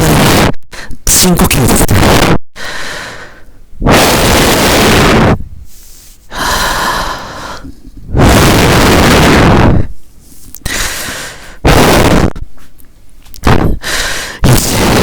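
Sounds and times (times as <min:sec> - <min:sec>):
deep breaths into microphone: 0:02.6 - 0:03.6, 0:05.4 - 0:08.4, 0:09.8 - 0:11.6, 0:13.7 - 0:14.4.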